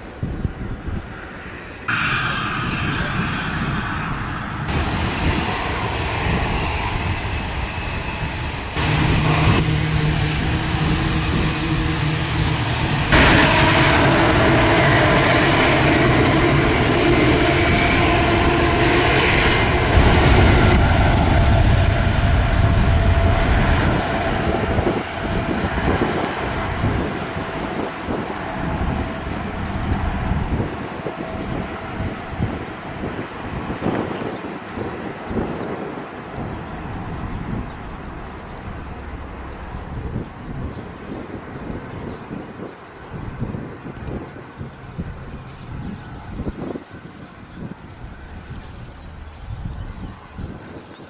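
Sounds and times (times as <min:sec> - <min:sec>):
jet engines roaring: 0:00.0 - 0:51.0.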